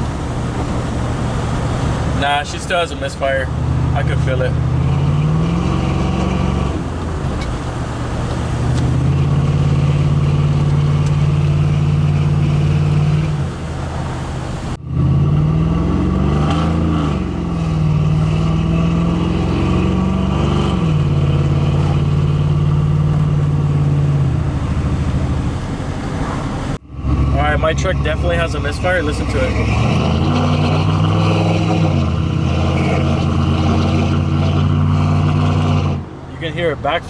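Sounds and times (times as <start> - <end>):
truck engine revving: 0.0 - 37.0.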